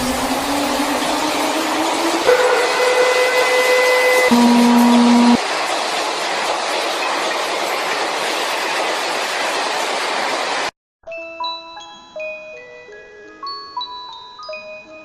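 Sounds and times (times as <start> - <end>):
loud static hiss: 4.2 - 5.5.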